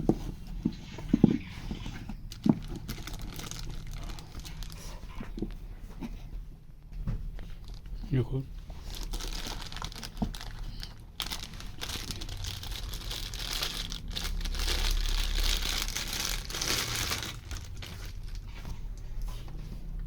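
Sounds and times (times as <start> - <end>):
packaging crinkling: 1.2 - 5.5, 7.4 - 8.0, 8.6 - 18.6.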